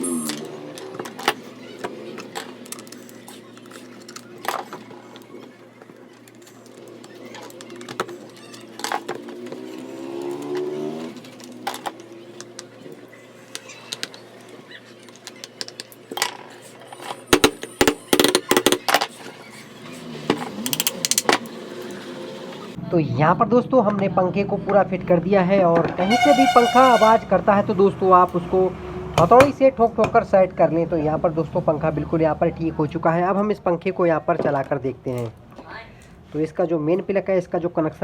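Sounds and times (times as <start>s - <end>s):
hand tools clicking on metal: 20.3s - 22.0s.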